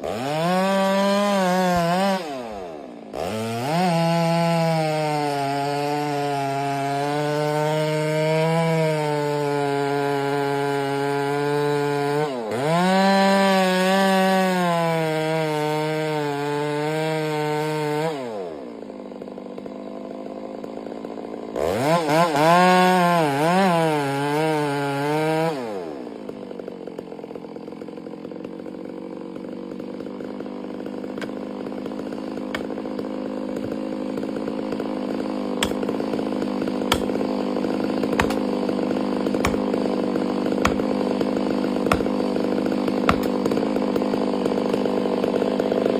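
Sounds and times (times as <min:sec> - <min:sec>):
chainsaw revving: 0:00.0 - 0:45.9.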